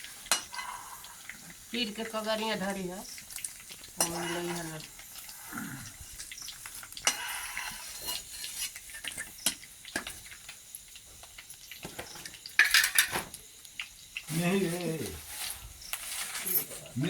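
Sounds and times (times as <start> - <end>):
utensils clattering: 0.0 - 0.9, 12.0 - 13.3
metal utensils clinking on pot: 0.0 - 2.2, 3.3 - 5.3, 5.9 - 10.2, 11.9 - 13.3.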